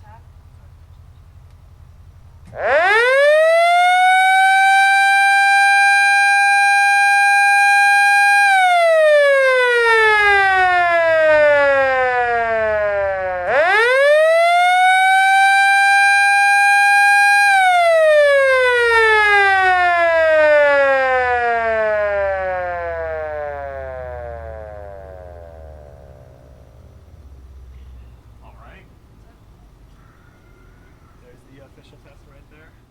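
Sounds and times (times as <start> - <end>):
siren wailing: 2.5 - 27.1.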